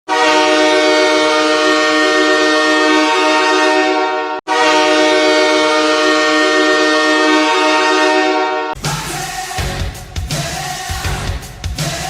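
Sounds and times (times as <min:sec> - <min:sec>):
goal horn multi-note chord: 0:00.1 - 0:08.8.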